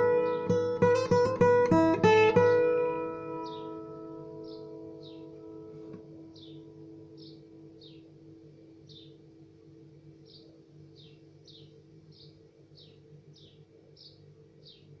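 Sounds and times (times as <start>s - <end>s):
bird chirping: 0.0s - 1.5s, 3.2s - 8.1s, 8.8s - 9.2s, 10.2s - 15.0s.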